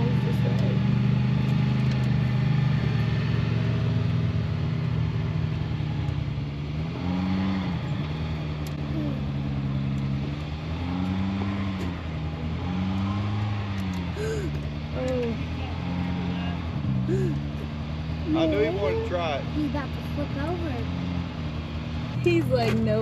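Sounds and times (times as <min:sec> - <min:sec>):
utility vehicle engine revving: 0:00.0 - 0:23.0.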